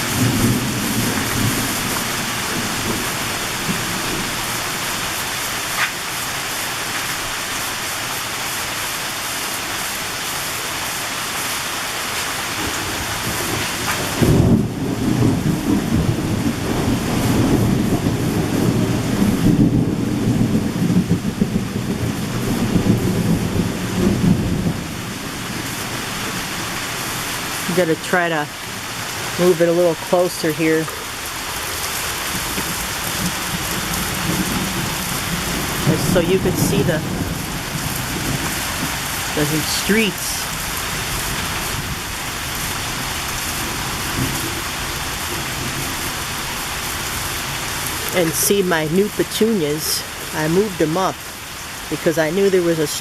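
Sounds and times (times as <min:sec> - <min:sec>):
thunder rumbling: 0:00.0 - 0:05.4, 0:12.6 - 0:30.1, 0:30.7 - 0:50.8
heavy rain: 0:00.0 - 0:53.0.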